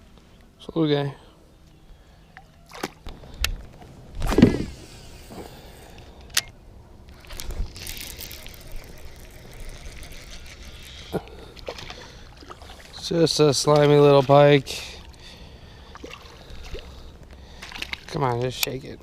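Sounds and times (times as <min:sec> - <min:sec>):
water splashing and sloshing: 0:02.6 - 0:05.6, 0:07.1 - 0:19.0.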